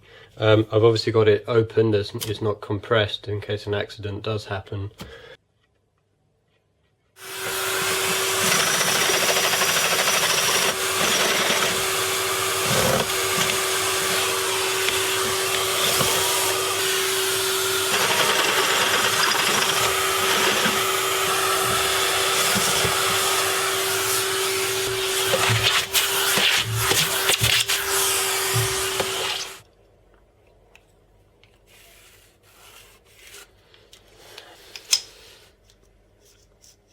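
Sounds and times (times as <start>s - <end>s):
electric drill whining: 7.2s - 29.6s.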